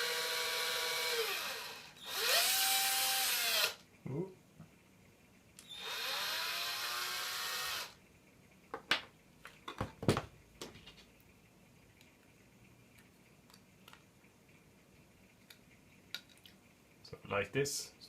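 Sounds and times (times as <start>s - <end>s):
electric drill spinning: 0.0s - 3.8s, 5.6s - 8.0s
handling knocks and clicks: 8.7s - 11.1s.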